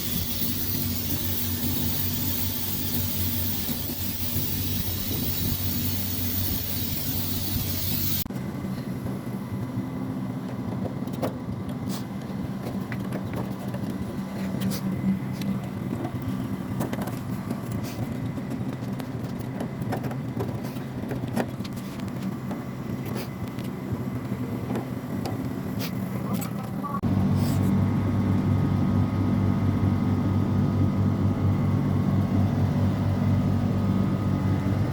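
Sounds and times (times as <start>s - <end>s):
low machine hum: 0.0s - 10.7s.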